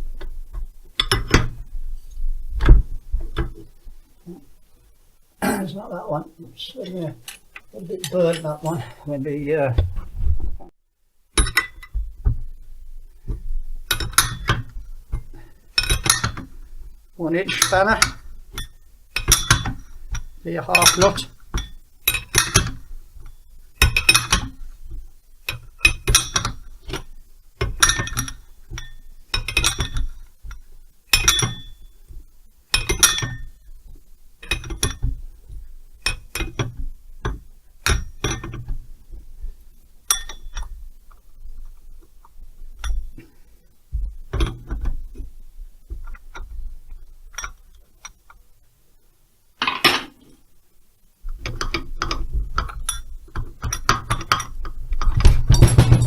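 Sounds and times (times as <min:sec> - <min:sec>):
spanner clinking against metal: 0:17.5 - 0:22.8, 0:25.5 - 0:26.6, 0:27.8 - 0:30.1, 0:31.1 - 0:31.7, 0:32.7 - 0:33.4, 0:40.1 - 0:40.7.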